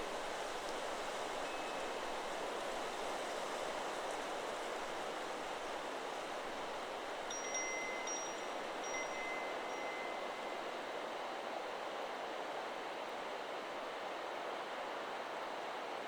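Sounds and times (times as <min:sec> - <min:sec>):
wind through trees: 0:00.0 - 0:11.7
wind chime ringing: 0:07.3 - 0:10.6.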